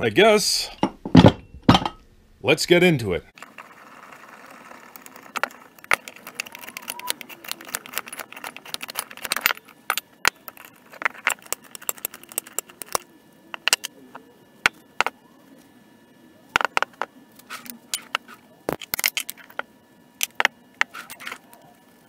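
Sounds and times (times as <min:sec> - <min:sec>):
metallic clicks and clanks of tools: 0:05.3 - 0:13.0.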